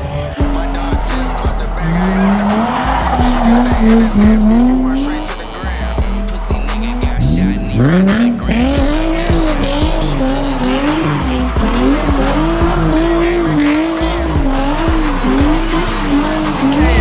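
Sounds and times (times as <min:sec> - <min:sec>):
background music: 0:00.0 - 0:17.0
car engine revving: 0:00.0 - 0:17.0
tire squeal: 0:00.0 - 0:17.0.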